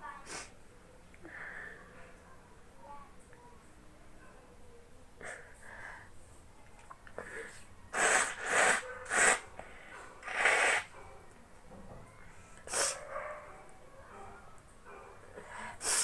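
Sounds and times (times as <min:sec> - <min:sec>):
soft breathing: 0:01.2 - 0:02.2, 0:05.2 - 0:06.5, 0:07.1 - 0:11.0, 0:15.2 - 0:16.0
sneeze-like nasal bursts: 0:07.9 - 0:09.5, 0:10.2 - 0:10.9, 0:12.6 - 0:13.0, 0:15.8 - 0:16.0.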